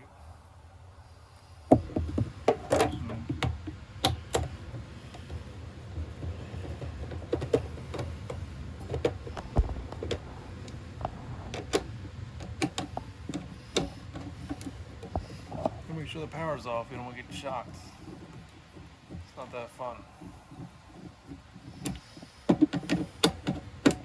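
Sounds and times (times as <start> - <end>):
hands clicking and knocking: 1.7 - 15.9, 17.3 - 24.0
low rumble: 9.3 - 12.5.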